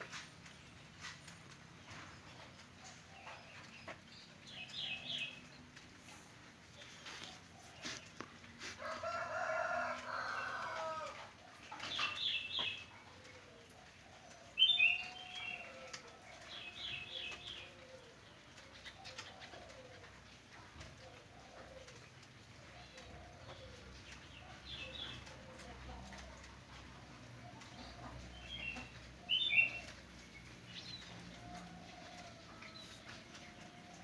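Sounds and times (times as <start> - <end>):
rooster crowing: 8.8 - 11.3.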